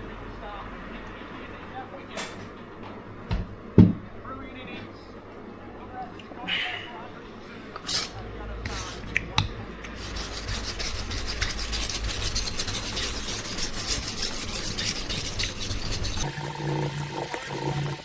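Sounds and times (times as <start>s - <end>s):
knife scraping on whetstone: 7.8s - 9.0s, 9.9s - 16.3s.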